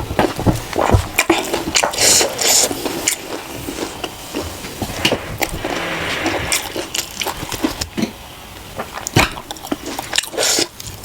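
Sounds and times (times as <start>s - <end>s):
chewing with clicks and smacks: 0.3s - 4.8s, 8.8s - 11.0s
wet slurp: 1.9s - 8.0s, 9.7s - 10.8s.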